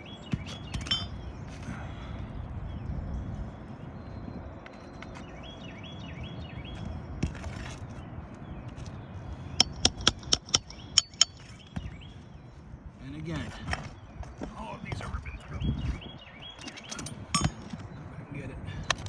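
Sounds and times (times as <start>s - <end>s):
hammer striking metal: 0.8s - 1.2s, 9.6s - 11.6s, 17.3s - 17.8s.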